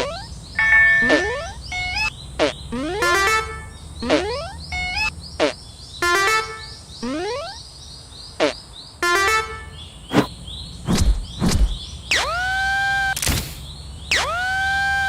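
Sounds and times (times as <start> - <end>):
faint rapid high chirping: 0.0 - 7.6
deep thumps: 10.9 - 11.8.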